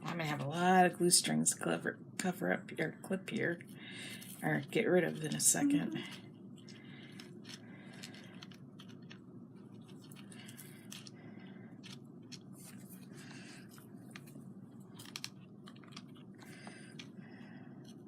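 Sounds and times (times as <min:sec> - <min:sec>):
plastic pieces handled: 0:06.6 - 0:11.2, 0:11.8 - 0:17.2.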